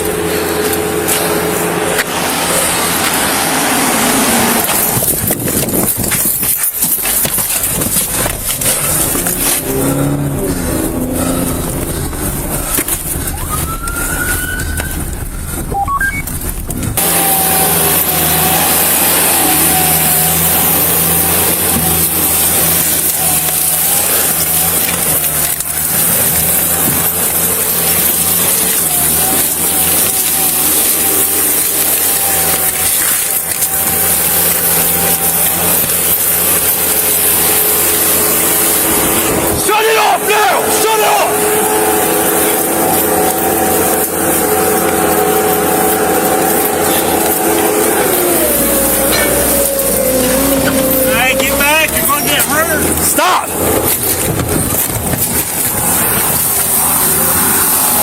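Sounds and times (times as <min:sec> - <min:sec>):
road and wind hiss: 0:00.0 - 0:25.1
vehicle engine drone: 0:00.0 - 0:58.0.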